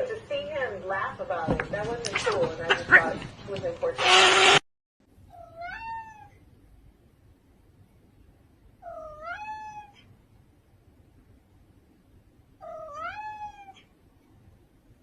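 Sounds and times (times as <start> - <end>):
cat meowing: 5.3 - 6.4, 8.8 - 10.1, 12.6 - 13.9.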